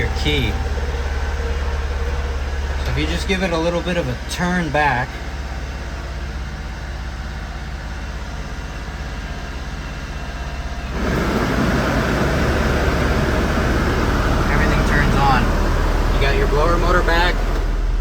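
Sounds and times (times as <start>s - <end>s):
heater blower fan rushing air: 0.0s - 5.6s, 10.8s - 18.0s
small engine idling: 0.0s - 18.0s.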